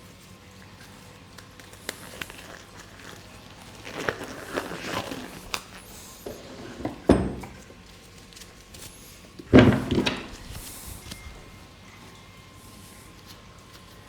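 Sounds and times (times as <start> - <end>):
heavy thumps on table: 6.3 - 7.6, 9.5 - 10.4.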